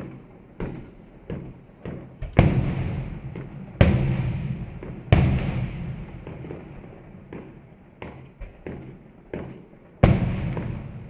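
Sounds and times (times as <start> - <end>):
fireworks exploding: 0.0 - 11.0
echoing rumble: 2.2 - 8.6.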